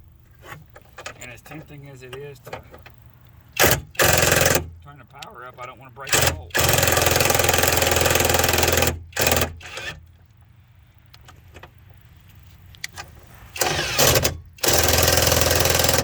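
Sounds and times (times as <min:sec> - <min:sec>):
impact wrench hammering: 0:03.6 - 0:04.7, 0:06.1 - 0:09.9, 0:13.6 - 0:16.0.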